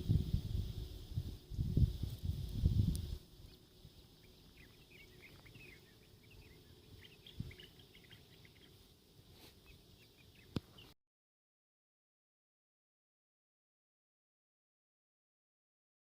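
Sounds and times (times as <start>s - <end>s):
wind rumble on microphone: 0.0s - 3.3s, 7.2s - 7.7s
songbirds chirping: 3.2s - 11.0s.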